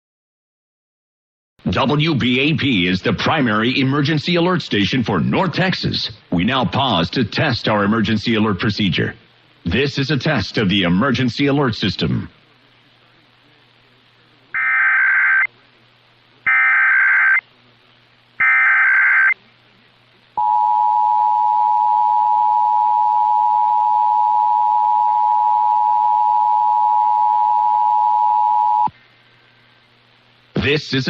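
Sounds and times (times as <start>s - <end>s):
digital data bursts: 14.5s - 15.5s, 16.4s - 17.4s, 18.4s - 19.4s.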